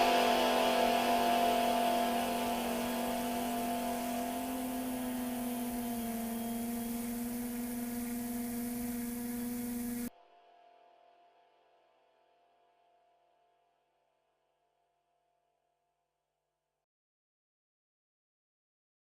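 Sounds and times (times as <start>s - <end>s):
low droning music chord: 0.0s - 13.4s.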